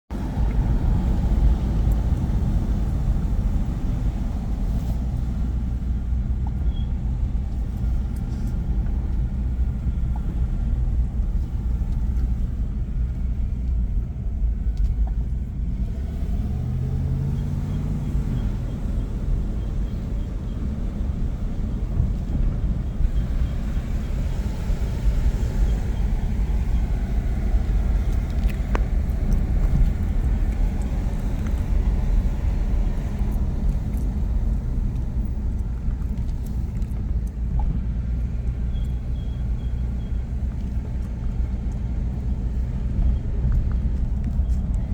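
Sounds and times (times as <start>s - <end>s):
car road and engine rumble: 0.1s - 44.9s
faint high squeak: 6.6s - 7.0s.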